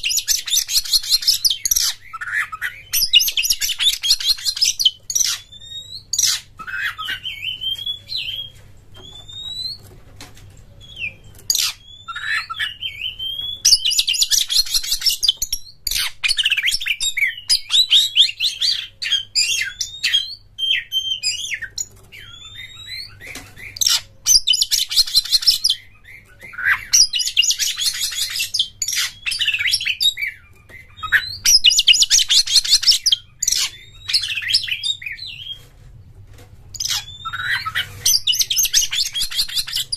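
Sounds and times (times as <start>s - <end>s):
bird singing whistled notes: 36.8s - 39.9s.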